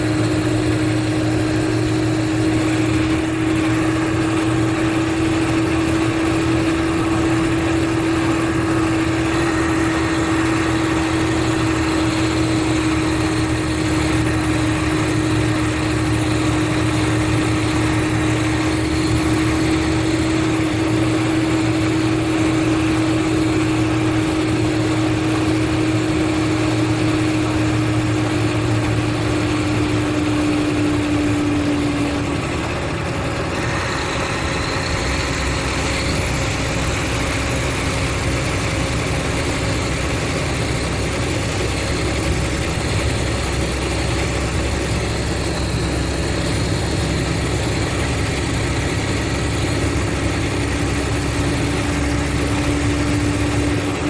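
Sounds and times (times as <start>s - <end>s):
diesel engine running: 0.0s - 54.0s
steady engine whine: 0.0s - 54.0s.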